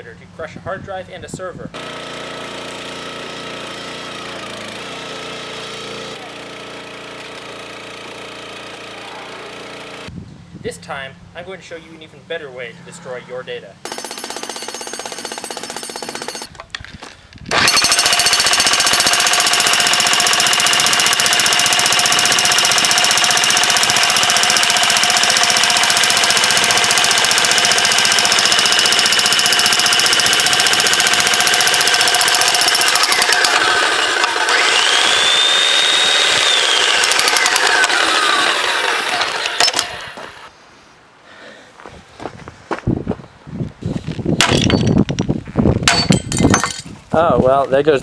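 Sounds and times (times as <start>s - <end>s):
jackhammer hammering: 1.8s - 10.1s, 13.8s - 16.5s, 17.5s - 40.5s, 45.9s - 46.8s.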